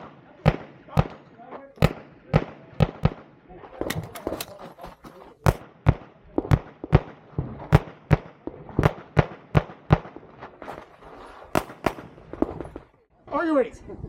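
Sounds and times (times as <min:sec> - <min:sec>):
pistol shots: 0:00.0 - 0:04.6, 0:05.4 - 0:10.4, 0:11.5 - 0:12.9.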